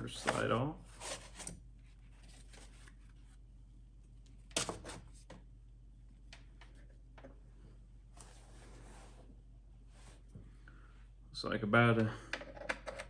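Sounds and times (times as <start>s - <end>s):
quiet handling noises: 0.0s - 5.5s, 6.1s - 10.8s.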